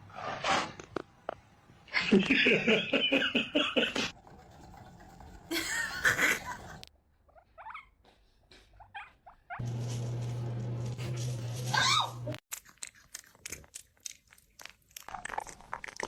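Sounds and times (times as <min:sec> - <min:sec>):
hamster squeaking: 0:07.3 - 0:08.0, 0:11.7 - 0:12.4.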